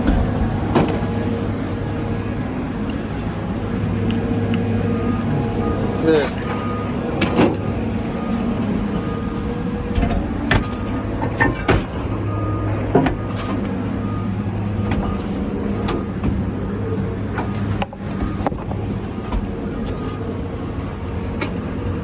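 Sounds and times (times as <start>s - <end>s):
metal clanks: 0.0s - 3.4s, 8.9s - 20.2s
crane engine running: 0.0s - 22.0s
short beeping alarm: 0.3s - 16.2s.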